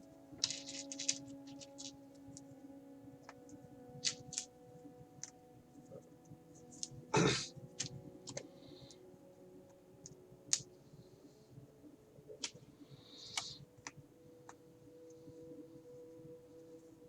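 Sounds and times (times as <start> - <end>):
faint steady hum: 0.0 - 17.0
plastic parts clicking: 0.4 - 1.9
plastic parts rattling: 0.4 - 1.9.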